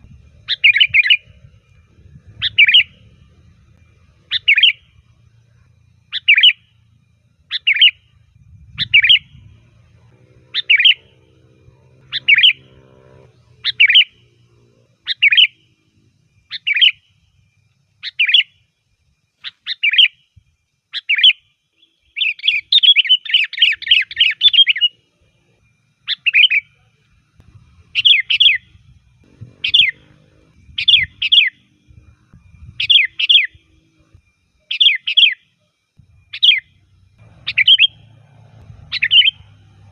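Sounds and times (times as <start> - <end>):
bird whistled calls: 0.3 - 3.2, 4.2 - 6.8, 7.5 - 9.7, 10.5 - 11.2, 12.1 - 12.7, 13.4 - 14.3, 15.0 - 15.6, 16.5 - 17.1, 18.0 - 18.6, 19.4 - 20.2, 20.9 - 25.0, 26.0 - 26.8, 27.8 - 33.8, 34.6 - 35.4, 36.1 - 39.9
bird rapid chattering: 2.4 - 3.0, 4.3 - 4.8, 10.5 - 11.2, 12.1 - 12.6, 27.9 - 28.7, 29.5 - 30.1, 37.3 - 38.1, 38.8 - 39.6.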